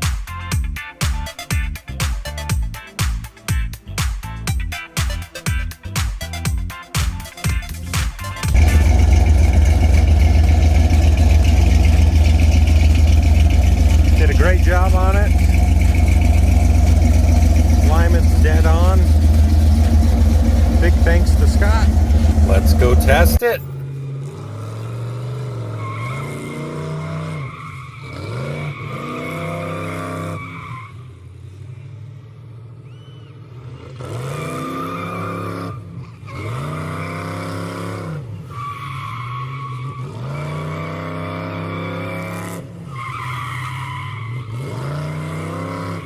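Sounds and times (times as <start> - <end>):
car engine revving: 8.5 - 38.5, 39.8 - 46.0
steady higher tone: 14.9 - 23.6.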